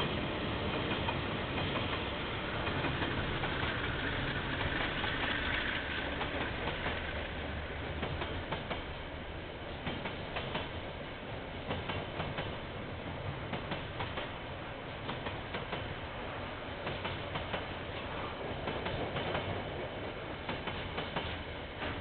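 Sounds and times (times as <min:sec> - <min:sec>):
train rumbling past: 0:00.0 - 0:22.0
train rushing sound: 0:00.0 - 0:22.0
wheels clicking over rail joints: 0:00.7 - 0:09.0.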